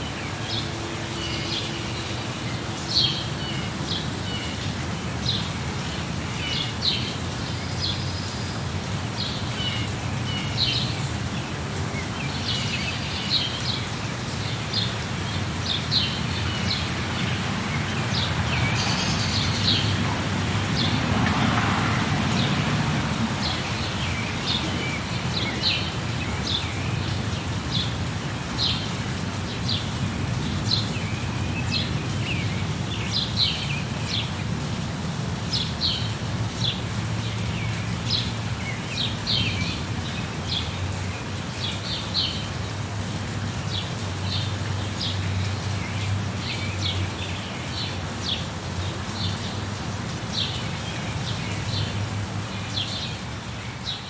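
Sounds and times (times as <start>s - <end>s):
birds chirping: 2.9s - 34.4s.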